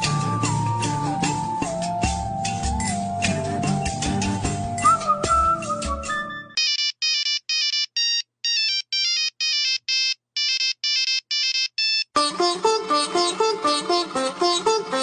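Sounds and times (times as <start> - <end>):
music: 0.0 - 6.6, 12.2 - 15.0
mobile phone ringtone beeps: 6.5 - 12.1.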